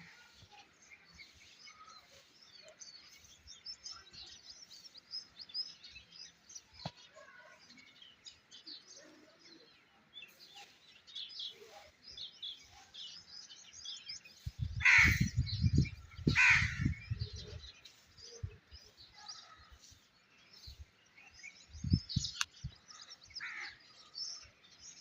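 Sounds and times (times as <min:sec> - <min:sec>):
small birds chirping: 0:00.0 - 0:25.0
harsh cawing calls: 0:14.8 - 0:15.3, 0:16.3 - 0:16.8.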